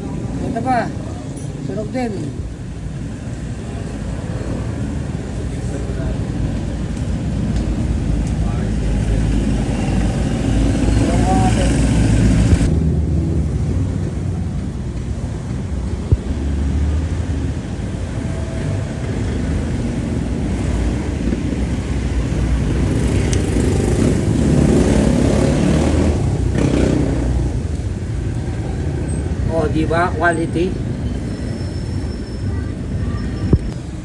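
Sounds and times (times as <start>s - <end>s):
low rumble of road vehicles: 0.0s - 34.0s.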